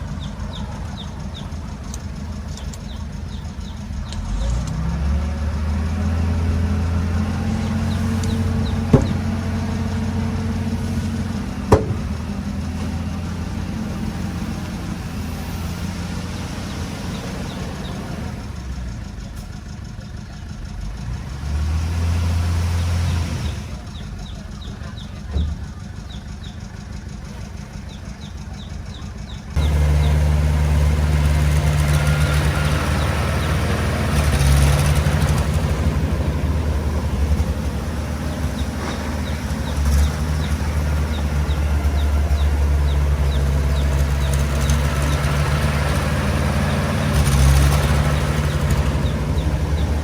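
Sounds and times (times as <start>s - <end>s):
bulldozer diesel engine running: 0.0s - 50.0s
sharp metal clanks: 11.7s - 12.4s.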